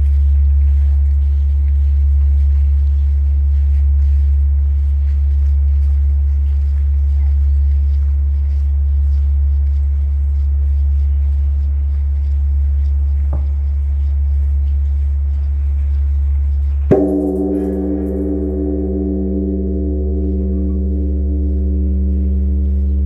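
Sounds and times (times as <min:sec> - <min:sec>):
large bronze bell tolling: 0:16.9 - 0:23.0.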